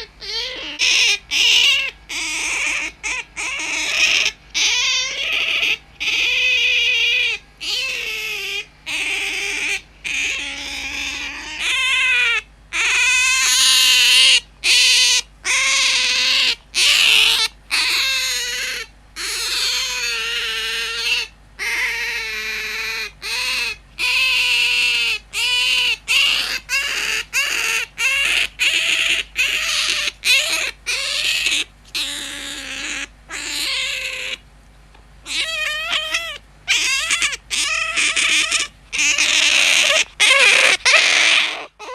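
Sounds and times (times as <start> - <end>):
otter squeaking: 35.3 - 41.9.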